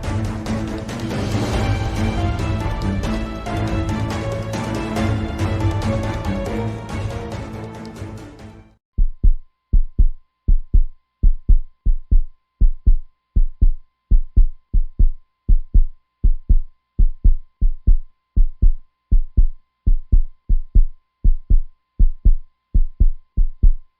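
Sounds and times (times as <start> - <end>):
music: 0.0 - 8.8
heartbeat thumps: 9.0 - 23.9.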